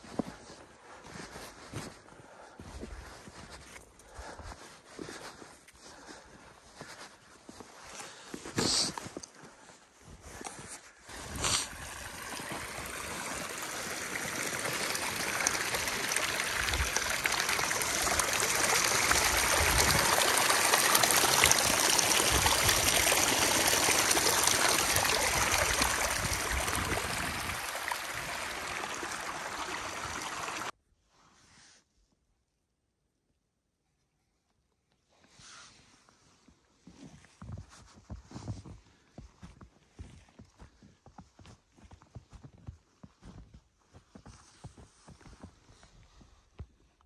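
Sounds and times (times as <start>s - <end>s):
stream water rushing: 11.1s - 30.7s.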